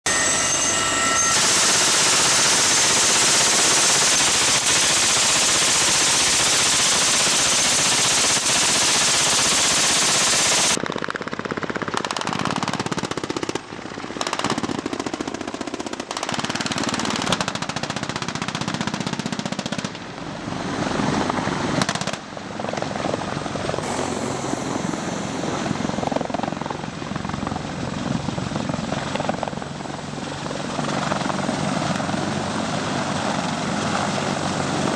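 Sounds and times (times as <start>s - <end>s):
helicopter noise: 0.0s - 17.3s, 20.4s - 34.9s
rifle and machine-gun fire: 1.3s - 20.0s, 21.8s - 22.3s.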